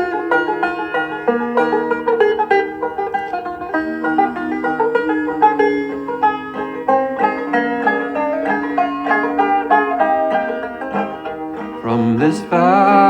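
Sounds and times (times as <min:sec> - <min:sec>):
banjo picking: 0:00.0 - 0:13.0.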